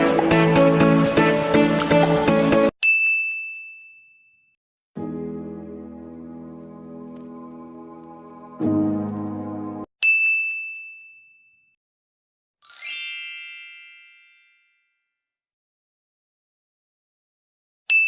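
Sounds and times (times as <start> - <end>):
background music: 0.0 - 2.7, 5.0 - 9.9
shimmering sparkly chime: 12.6 - 14.8.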